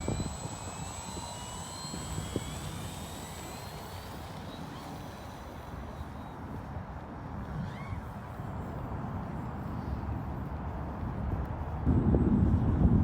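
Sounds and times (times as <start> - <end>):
wind rumble on microphone: 0.0 - 3.4, 6.0 - 13.0
model plane motor whining: 0.0 - 9.4.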